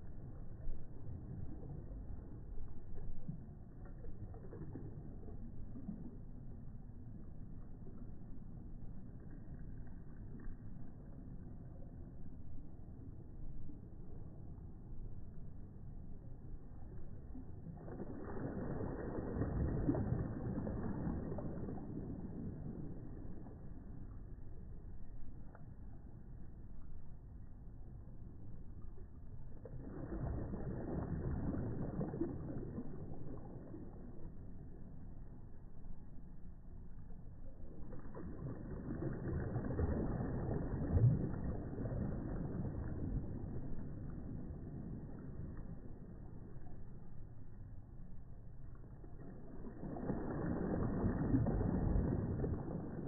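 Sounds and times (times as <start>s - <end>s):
small waves breaking: 0.0s - 14.8s, 16.2s - 27.4s, 28.0s - 36.3s, 37.4s - 53.0s
sea waves breaking: 17.2s - 24.2s, 29.6s - 34.7s, 37.8s - 46.7s, 49.2s - 53.0s.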